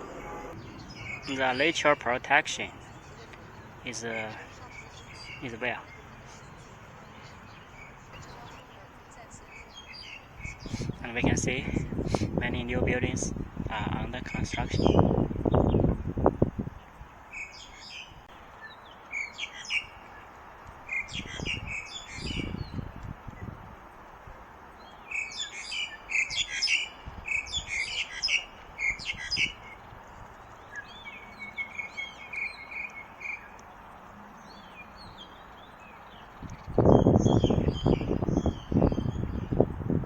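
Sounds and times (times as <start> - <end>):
thin steady bird trill: 0.0 - 11.1, 24.7 - 39.6
songbirds chirping: 0.0 - 40.0.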